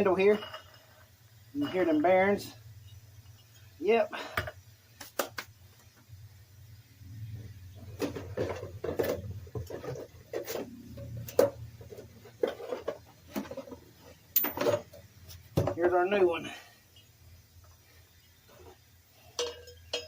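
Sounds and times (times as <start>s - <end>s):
knocks and clatter of metal housing: 7.8s - 15.8s.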